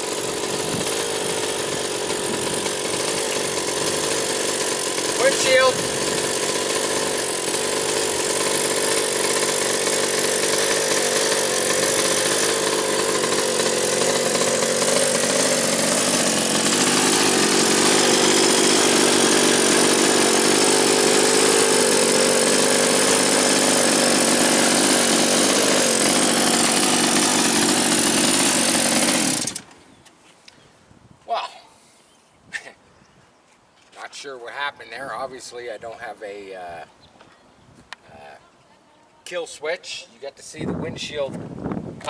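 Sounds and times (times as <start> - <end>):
small engine running: 0.0 - 29.7.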